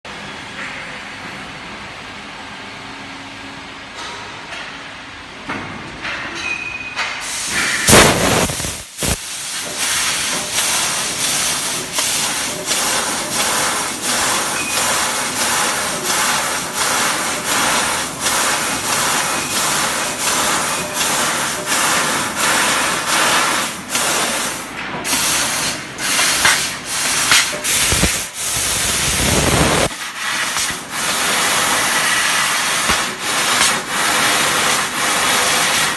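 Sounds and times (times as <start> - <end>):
laser cutter hissing: 7.3 - 35.9.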